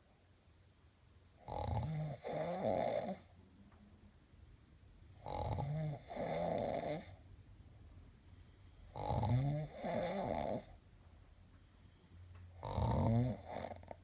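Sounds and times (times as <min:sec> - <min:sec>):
loud snoring: 0:01.4 - 0:03.3, 0:05.2 - 0:07.2, 0:08.9 - 0:10.8, 0:12.6 - 0:14.0.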